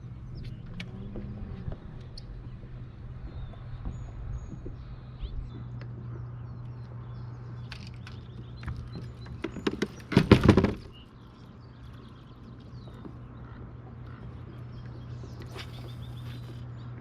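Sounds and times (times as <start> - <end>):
steady low hum: 0.0 - 17.0
sharp knocks and clicks: 7.6 - 11.0.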